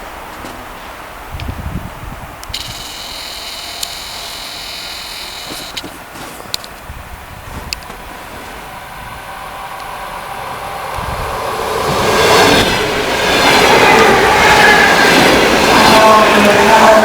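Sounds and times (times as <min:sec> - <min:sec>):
train passing on track: 0:00.0 - 0:17.0
high ringing wheel whine: 0:02.6 - 0:05.8.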